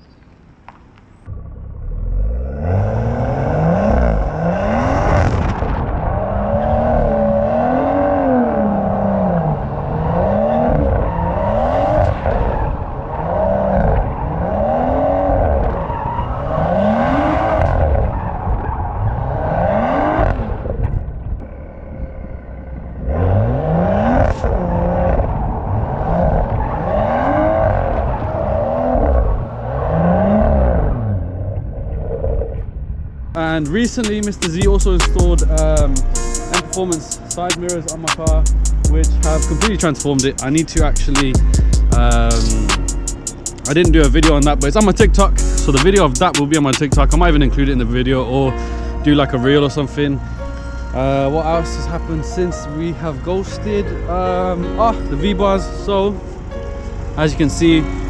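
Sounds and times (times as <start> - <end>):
car engine revving: 1.3 - 31.6, 33.4 - 48.4.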